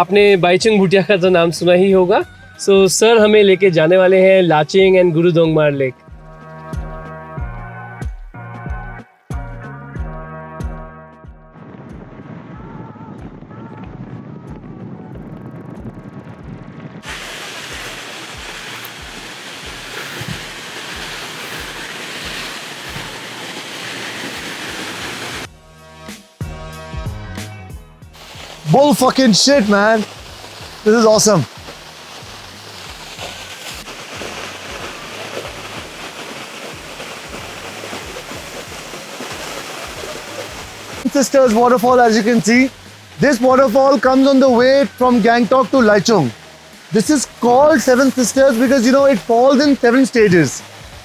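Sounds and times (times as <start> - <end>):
waterfall roaring: 17.0 - 25.5, 28.2 - 51.0.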